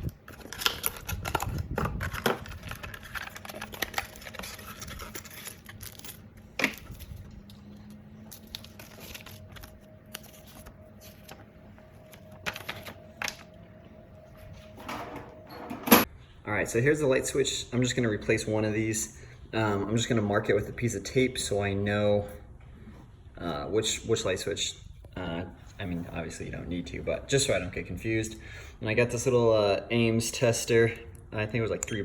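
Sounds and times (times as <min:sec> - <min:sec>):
packaging rustling: 0:00.0 - 0:13.6.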